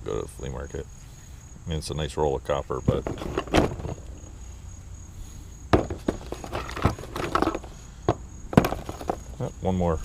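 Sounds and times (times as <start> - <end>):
crickets chirring: 0.0 - 10.0
rustling: 3.0 - 4.6, 5.2 - 9.5.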